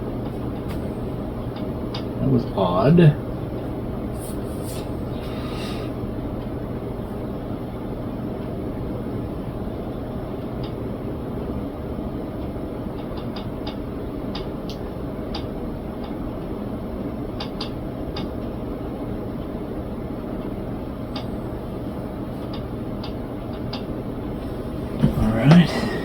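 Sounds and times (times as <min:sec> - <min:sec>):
computer cooling fans humming: 0:19.5 - 0:26.0.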